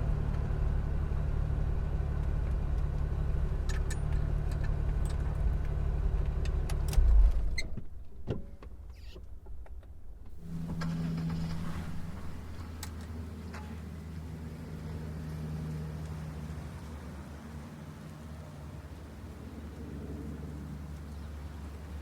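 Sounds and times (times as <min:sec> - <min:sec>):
car engine running: 0:10.3 - 0:13.4.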